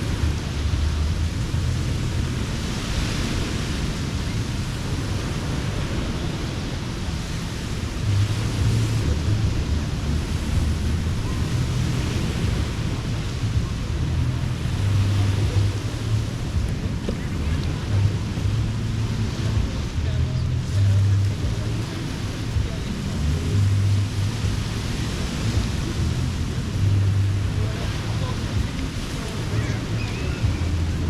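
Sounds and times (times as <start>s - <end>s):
surf washing on beach: 0.0s - 31.0s
wind rumbling on microphone: 0.0s - 31.0s.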